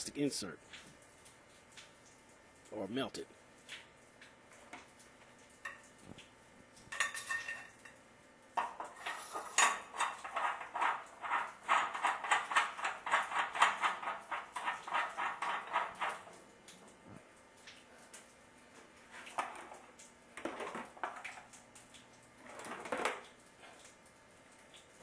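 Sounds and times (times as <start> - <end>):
rapid metallic scraping: 9.0 - 16.3.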